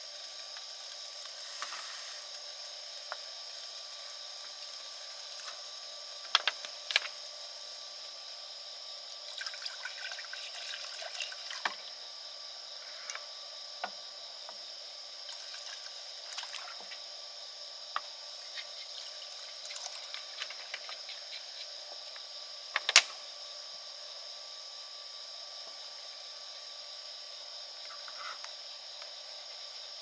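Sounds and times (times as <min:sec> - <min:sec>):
liquid trickling and pouring: 0:09.4 - 0:11.8, 0:19.1 - 0:21.0.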